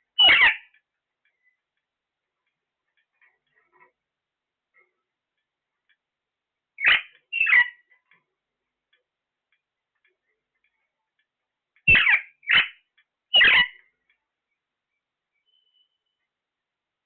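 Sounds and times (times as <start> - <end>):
parrot squawking: 0.2 - 0.7, 6.8 - 7.8, 11.9 - 13.8.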